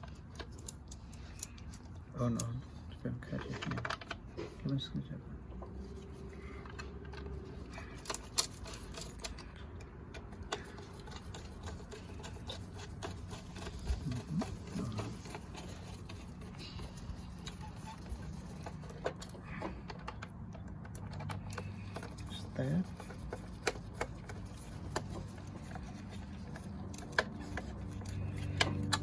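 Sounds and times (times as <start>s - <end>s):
screwdriver and parts clicking: 0.0s - 2.6s, 6.6s - 29.0s
steady low hum: 0.0s - 29.0s.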